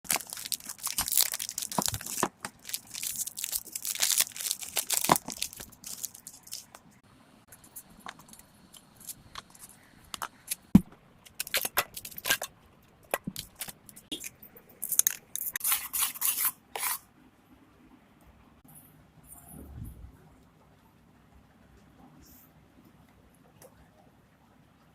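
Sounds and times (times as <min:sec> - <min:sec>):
plastic packaging crinkling and tearing: 0:00.0 - 0:06.9, 0:11.3 - 0:12.5, 0:13.2 - 0:14.3.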